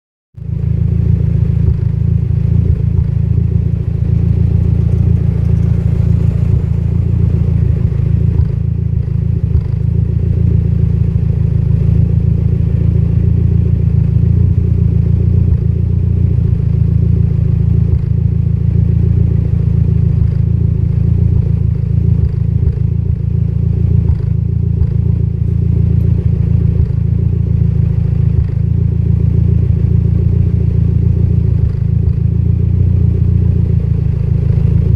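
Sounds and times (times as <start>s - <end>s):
car engine idling unevenly: 0.4s - 34.9s.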